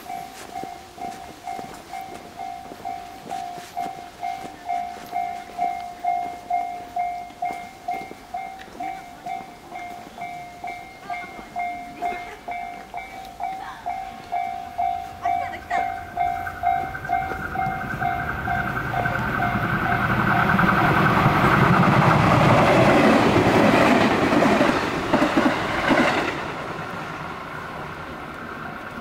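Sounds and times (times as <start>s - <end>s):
level crossing warning bell: 0.0s - 25.3s
electric train passing: 0.0s - 29.0s
wheels clacking over rail joints: 0.0s - 29.0s.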